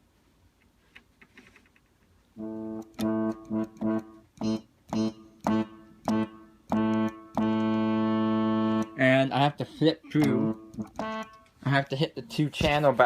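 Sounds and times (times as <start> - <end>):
electronic keyboard low brass notes: 2.4 - 11.8.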